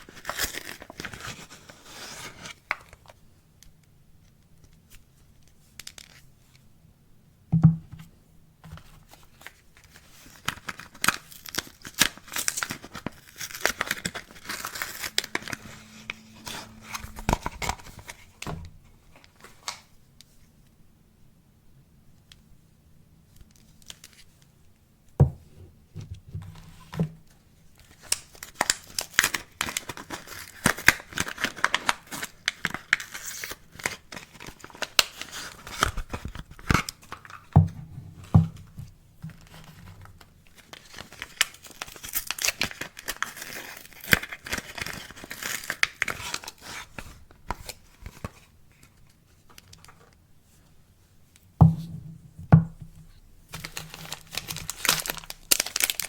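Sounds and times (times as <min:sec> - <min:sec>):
wrapper crinkling and tearing: 0:00.0 - 0:03.1, 0:09.3 - 0:18.4, 0:27.8 - 0:37.5, 0:39.4 - 0:48.9, 0:53.6 - 0:56.0.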